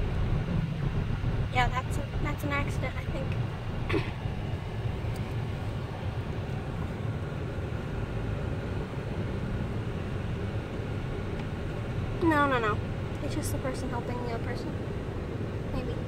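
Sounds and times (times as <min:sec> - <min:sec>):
engine and road noise rumble: 0:00.0 - 0:16.0.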